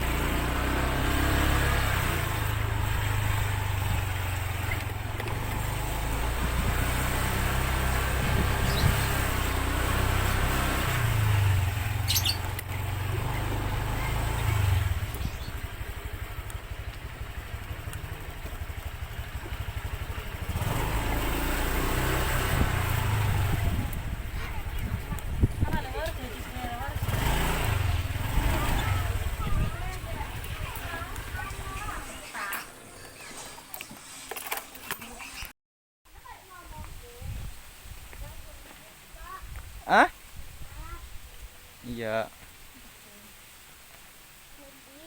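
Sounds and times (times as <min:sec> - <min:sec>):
vehicle engine rumbling: 0:00.0 - 0:35.5.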